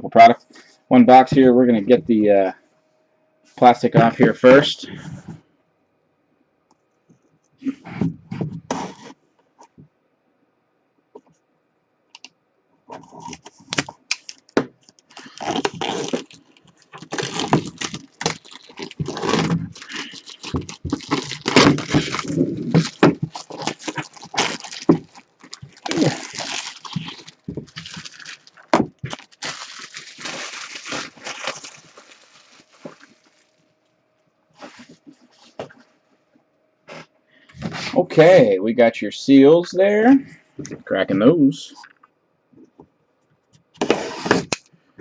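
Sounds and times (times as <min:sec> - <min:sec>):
plastic shrink wrap crinkling: 0:13.0 - 0:33.6.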